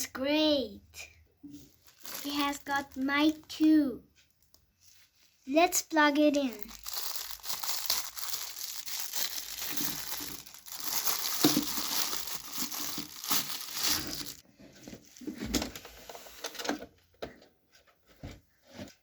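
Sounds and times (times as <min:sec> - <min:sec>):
plastic packaging crinkling: 0:01.6 - 0:03.6, 0:06.2 - 0:14.4.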